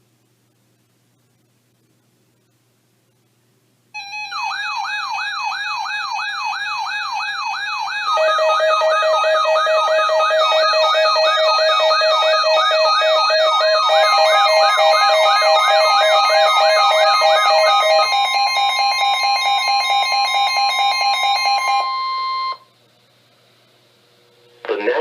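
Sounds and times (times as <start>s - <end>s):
steady electronic tones: 4.0s - 22.6s
electronic siren-like alarm: 4.0s - 22.7s
loud steady tone: 4.0s - 22.8s.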